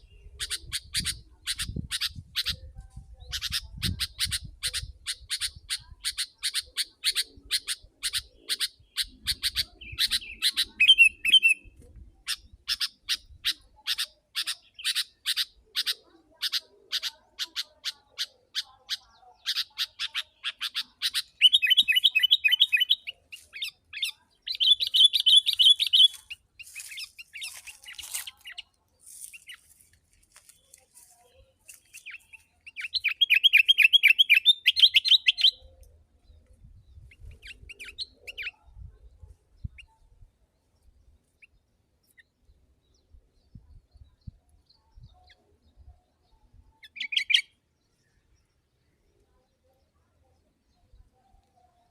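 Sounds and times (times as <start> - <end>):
bird chattering song: 0.0 - 51.9.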